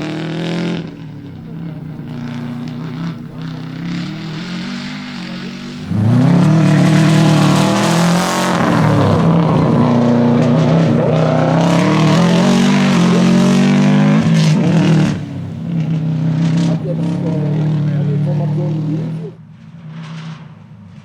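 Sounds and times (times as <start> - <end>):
rally car engine revving: 0.0 - 21.0.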